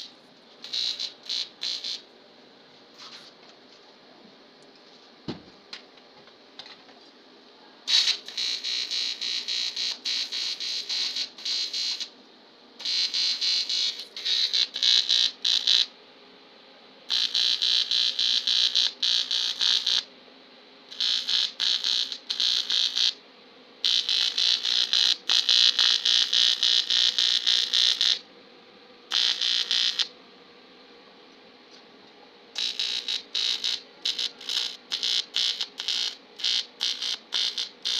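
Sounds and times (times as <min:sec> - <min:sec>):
welding arc buzzing: 0:00.0 - 0:02.1, 0:07.9 - 0:12.1, 0:12.8 - 0:15.9, 0:17.1 - 0:20.1, 0:20.9 - 0:23.2, 0:23.8 - 0:28.3, 0:29.1 - 0:30.2, 0:32.5 - 0:37.9.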